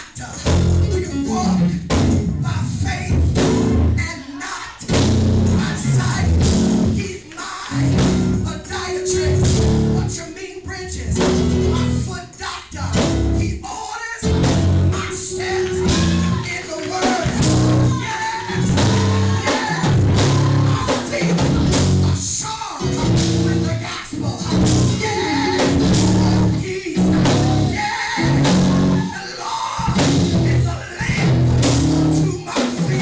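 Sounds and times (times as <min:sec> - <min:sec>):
gospel singing: 0:00.0 - 0:33.0
low chords: 0:00.5 - 0:04.0, 0:04.9 - 0:07.0, 0:07.8 - 0:10.2, 0:11.1 - 0:12.1, 0:12.9 - 0:13.6, 0:14.2 - 0:22.2, 0:22.8 - 0:23.8, 0:24.4 - 0:29.1
heavy pulsing beat: 0:14.3 - 0:22.2.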